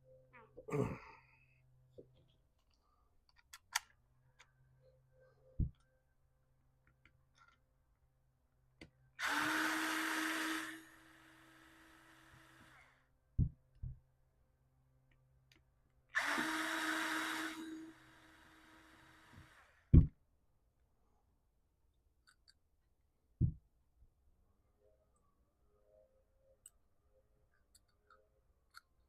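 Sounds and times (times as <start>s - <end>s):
clicks of parts being handled: 2.0s - 4.6s, 22.2s - 22.6s
handheld power tool running: 9.2s - 13.0s, 16.2s - 19.9s.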